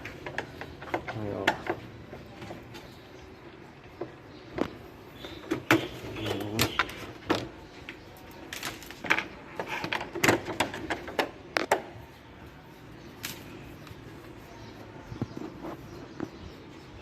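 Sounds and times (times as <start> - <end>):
plastic parts clicking and knocking: 0.0 - 2.9, 4.0 - 12.0.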